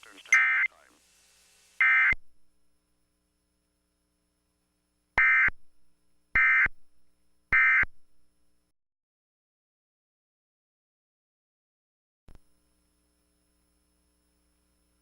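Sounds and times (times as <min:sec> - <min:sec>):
digital data tone bursts: 0:00.0 - 0:00.8, 0:01.8 - 0:02.2.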